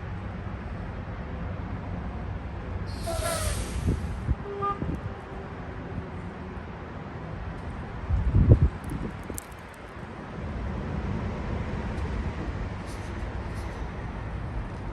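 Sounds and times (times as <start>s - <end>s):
diesel truck engine rumbling: 0.0s - 14.9s
falling squeal: 2.9s - 4.0s
short hiss: 2.9s - 4.2s.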